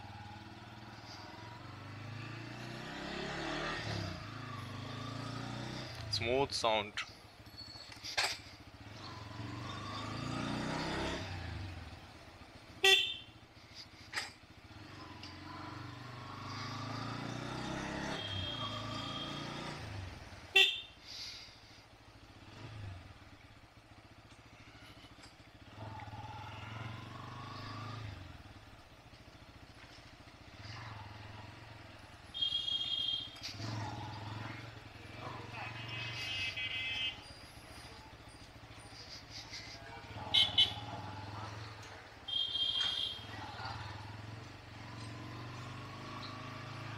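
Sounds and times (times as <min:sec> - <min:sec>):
motorcycle engine revving: 0:00.0 - 0:46.9
horn honks: 0:12.7 - 0:13.4, 0:17.6 - 0:21.1, 0:32.2 - 0:34.5, 0:35.1 - 0:37.4, 0:40.2 - 0:41.2, 0:42.2 - 0:43.6.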